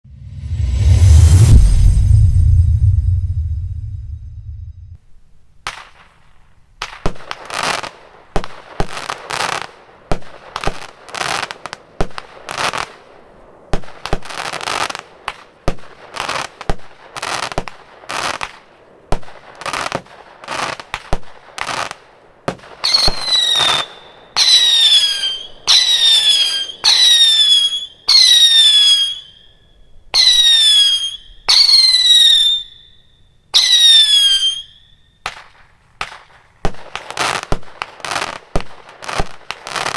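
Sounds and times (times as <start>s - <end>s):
firework shots launching and bursting: 13.8s - 29.3s
falling firework whistle: 22.8s - 35.3s.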